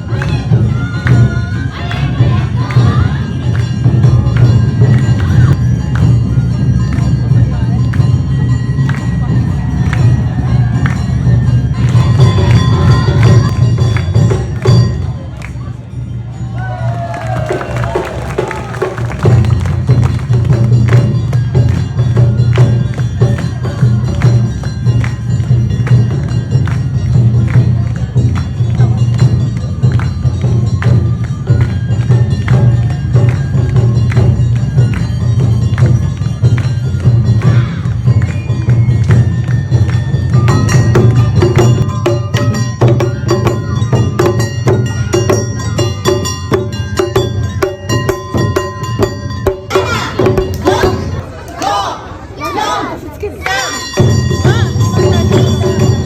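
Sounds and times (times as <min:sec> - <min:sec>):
metallic percussion strikes: 0:00.0 - 0:51.5, 0:53.3 - 0:56.0
drums beating steady rhythm: 0:00.0 - 0:51.8, 0:53.3 - 0:56.0
hand gong clanging: 0:53.6 - 0:56.0.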